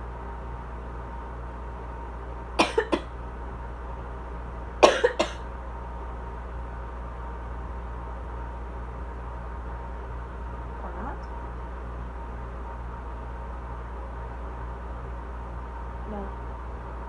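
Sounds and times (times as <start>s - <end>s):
air conditioner hum: 0.0s - 17.0s
person coughing: 2.6s - 3.1s, 4.8s - 5.4s.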